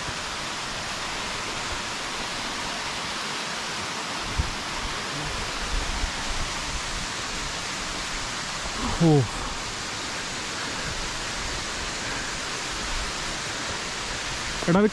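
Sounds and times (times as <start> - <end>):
waterfall roaring: 0.0 - 14.9.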